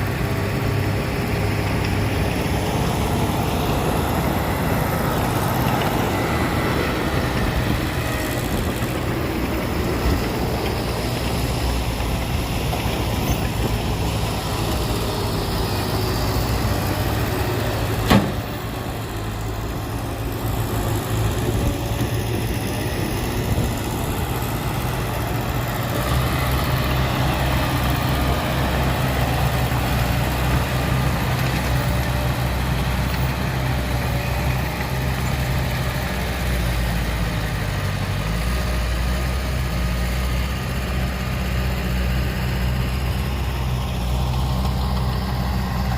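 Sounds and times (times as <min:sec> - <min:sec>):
heavy diesel machinery running: 0:00.0 - 0:45.9.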